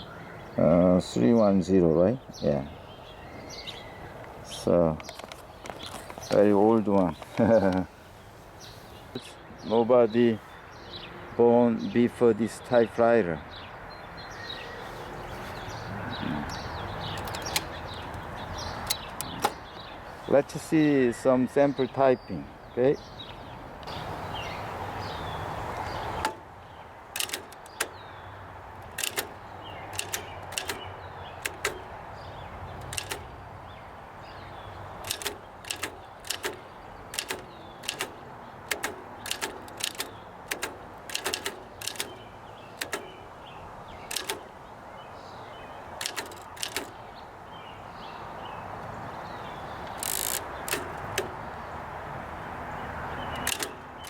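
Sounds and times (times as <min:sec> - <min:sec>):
typewriter key strikes: 0:17.1 - 0:18.2, 0:18.8 - 0:19.7, 0:26.2 - 0:26.5, 0:27.2 - 0:28.0, 0:28.8 - 0:32.0, 0:32.8 - 0:33.4, 0:35.0 - 0:43.2, 0:44.0 - 0:44.5, 0:46.0 - 0:47.0, 0:49.9 - 0:51.4, 0:53.4 - 0:54.0.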